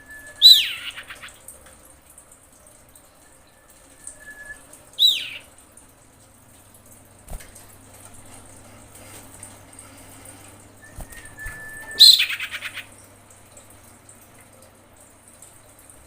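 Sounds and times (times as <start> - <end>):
bird whistling call: 0.0 - 1.3, 3.5 - 5.5, 10.8 - 12.9.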